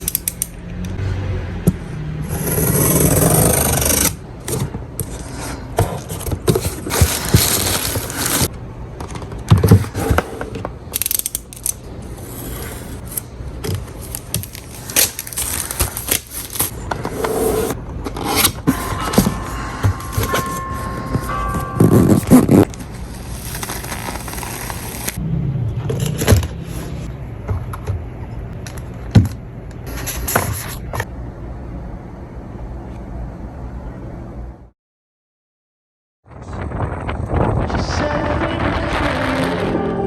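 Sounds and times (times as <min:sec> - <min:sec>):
packaging scraping and rustling: 0:02.8 - 0:08.5, 0:09.6 - 0:25.2.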